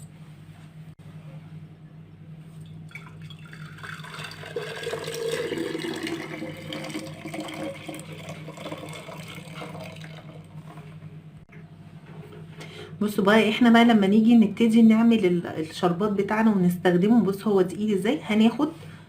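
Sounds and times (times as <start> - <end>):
liquid pouring into a jar: 2.6 - 10.9.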